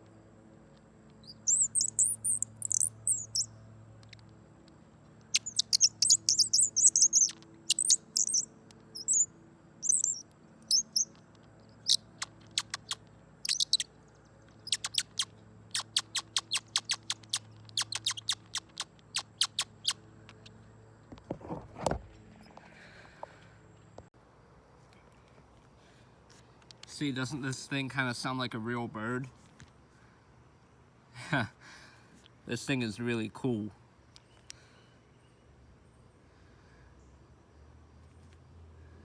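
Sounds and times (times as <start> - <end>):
bird caller squeaking chirps: 1.2 - 3.5, 5.4 - 11.2, 11.8 - 13.9, 14.6 - 20.0.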